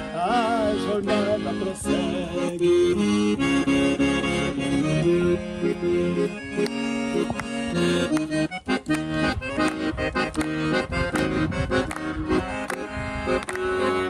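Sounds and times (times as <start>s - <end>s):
accordion melody: 0.0s - 14.0s
rhythmic backing: 0.0s - 14.0s.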